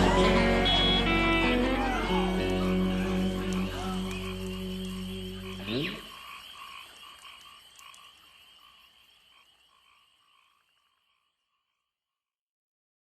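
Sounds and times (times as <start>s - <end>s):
acoustic country song: 0.0s - 5.6s
frogs croaking: 0.4s - 12.0s.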